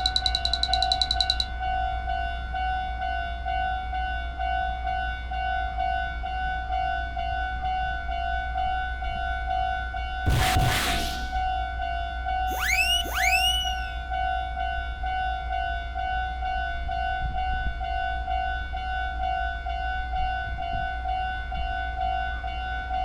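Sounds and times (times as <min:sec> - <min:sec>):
high-pitched ringing pulse: 0:00.0 - 0:01.5, 0:10.3 - 0:11.4, 0:12.5 - 0:14.1
railroad crossing warning tone: 0:00.0 - 0:01.5.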